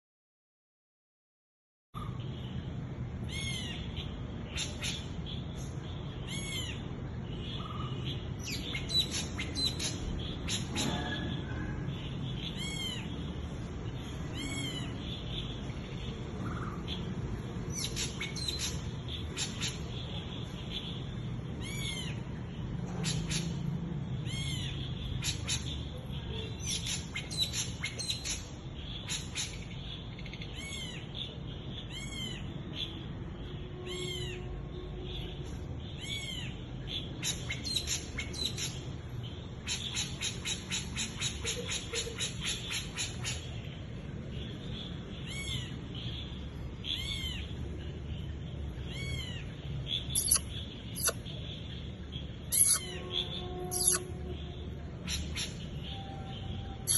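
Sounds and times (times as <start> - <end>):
night bird calling: 3.2 - 13.3, 33.7 - 35.3, 39.6 - 43.7, 44.6 - 56.9.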